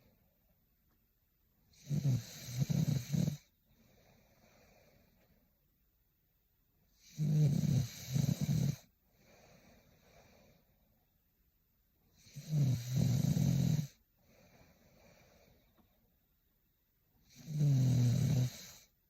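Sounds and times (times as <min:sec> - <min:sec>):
woman snoring: 0:01.7 - 0:03.5, 0:07.0 - 0:08.9, 0:12.2 - 0:14.0, 0:17.2 - 0:18.9
soft breath out: 0:03.7 - 0:05.6, 0:14.2 - 0:16.0.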